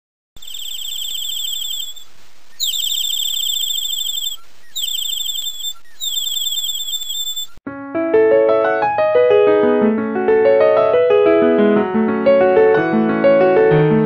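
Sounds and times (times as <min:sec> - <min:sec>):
bird trilling song: 0:01.4 - 0:07.6.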